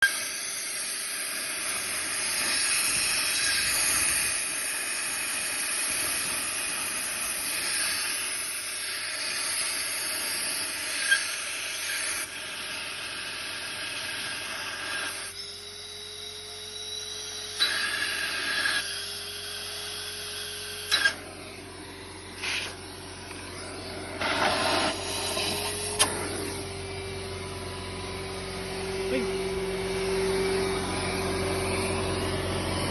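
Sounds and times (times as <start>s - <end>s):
compressed air hissing: 22.3s - 22.9s, 24.1s - 26.5s
sharp click: 26.0s - 26.2s.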